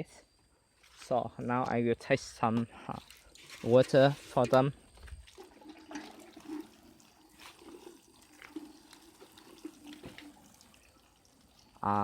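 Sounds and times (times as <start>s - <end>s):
water trickling and splashing: 2.9s - 12.0s.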